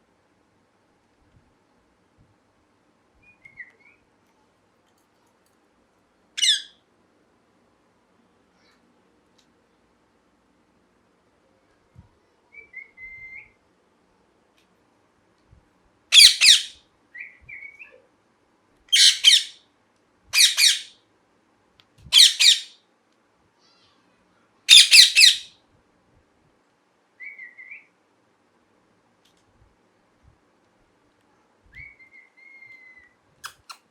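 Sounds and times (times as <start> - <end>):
soft whistled chirps: 3.2 - 4.0, 27.2 - 27.9, 31.7 - 33.2
parrot screeching: 6.4 - 6.8, 16.1 - 16.7, 18.9 - 19.6, 20.4 - 21.0, 22.1 - 22.8, 24.7 - 25.5.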